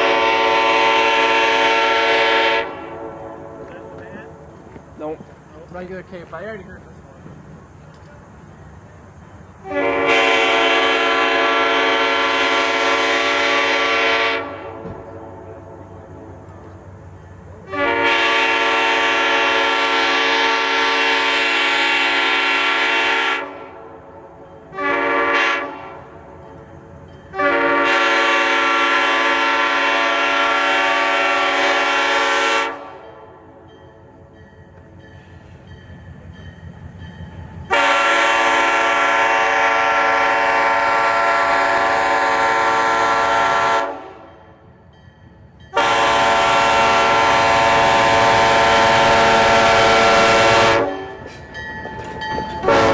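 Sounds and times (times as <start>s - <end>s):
locomotive air horn blasts: 0.0s - 4.0s, 9.6s - 16.4s, 17.7s - 24.1s, 24.7s - 26.2s, 27.3s - 33.5s, 37.7s - 44.4s, 45.7s - 51.3s, 52.6s - 52.9s.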